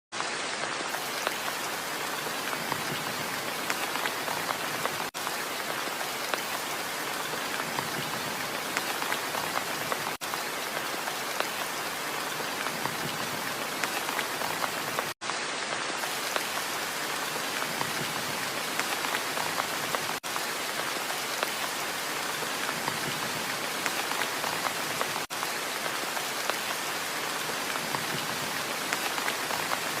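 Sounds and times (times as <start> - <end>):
rain patter: 0.1 - 30.0.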